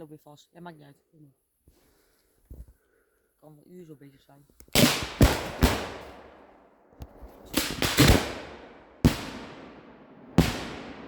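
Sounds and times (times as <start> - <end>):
firework bangs with echo: 4.7 - 11.0.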